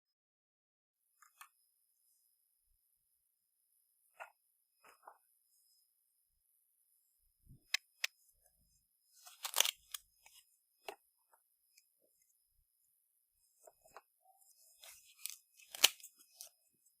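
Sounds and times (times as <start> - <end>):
packaging crinkling: 9.3 - 10.0.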